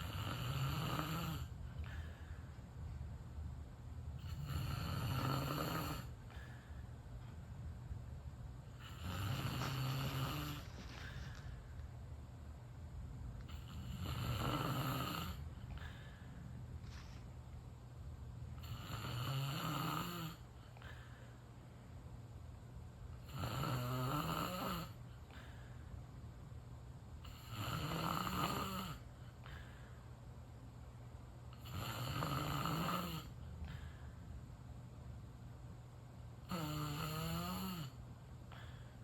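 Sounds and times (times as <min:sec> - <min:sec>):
person snoring: 0:00.0 - 0:02.1, 0:04.2 - 0:06.2, 0:08.8 - 0:11.2, 0:13.5 - 0:16.0, 0:18.6 - 0:20.4, 0:23.2 - 0:25.0, 0:27.3 - 0:29.1, 0:31.6 - 0:33.8, 0:36.4 - 0:38.0.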